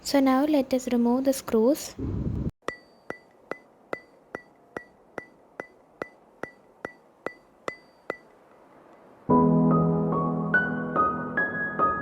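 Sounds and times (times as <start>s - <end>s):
metallic ticks with ringing tone: 2.6s - 9.1s
soft piano music: 9.3s - 12.0s.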